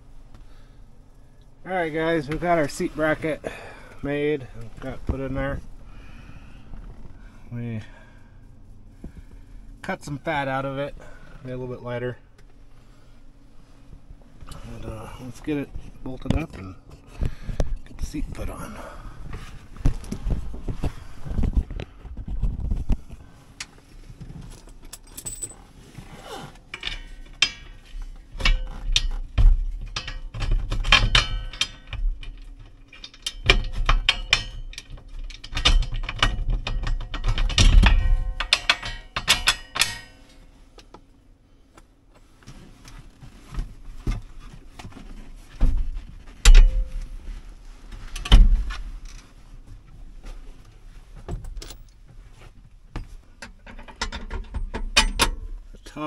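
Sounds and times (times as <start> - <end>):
metal tools clinking and rattling: 24.5 - 25.7, 29.8 - 40.5.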